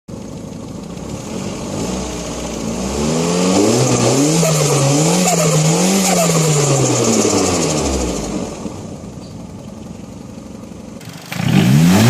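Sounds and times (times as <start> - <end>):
car engine revving: 0.9 - 9.0, 11.0 - 12.0.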